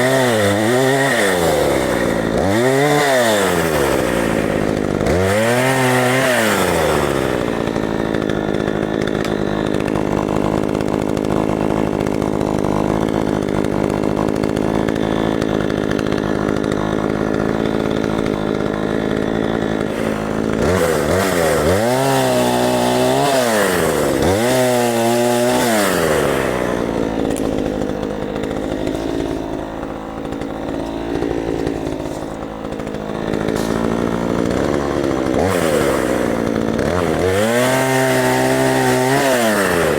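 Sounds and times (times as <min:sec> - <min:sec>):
chainsaw running and revving: 0:00.0 - 0:39.9.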